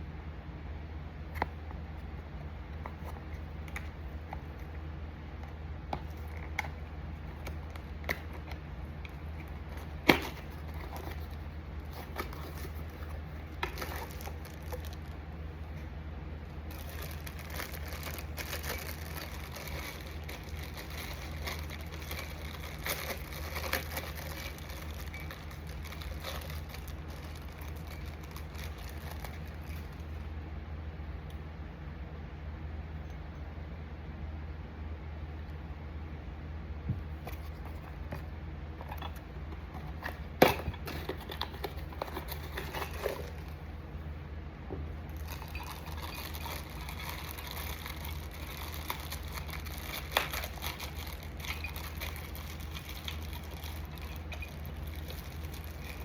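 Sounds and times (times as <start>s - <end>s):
steady low hum: 0.0s - 56.0s
wrapping rustling: 6.1s - 15.9s, 16.6s - 30.2s, 37.2s - 43.7s, 45.1s - 56.0s.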